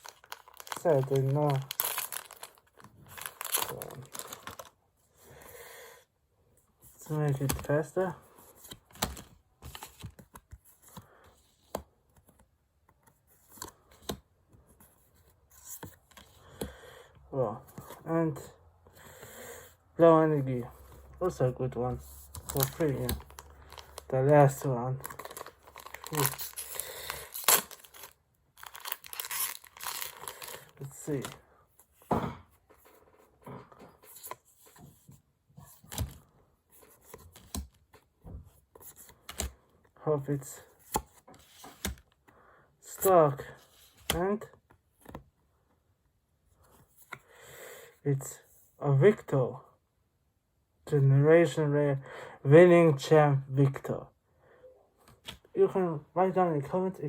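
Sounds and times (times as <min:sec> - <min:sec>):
trading cards shuffling and snapping: 0:00.0 - 0:04.7, 0:08.6 - 0:14.2, 0:22.2 - 0:31.4, 0:36.8 - 0:38.0, 0:38.8 - 0:39.6, 0:40.8 - 0:42.1.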